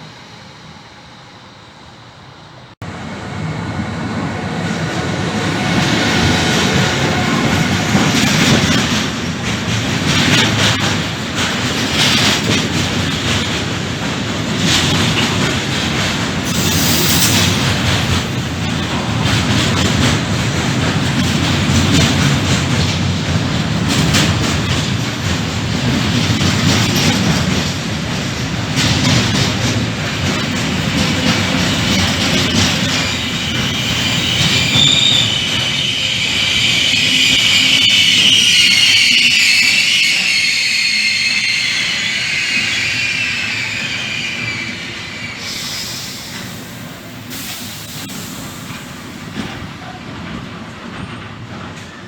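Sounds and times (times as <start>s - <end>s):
train wagons rumbling and clattering: 2.6s - 52.0s
high wheel squeal: 5.2s - 10.8s, 16.3s - 18.7s, 28.1s - 49.5s.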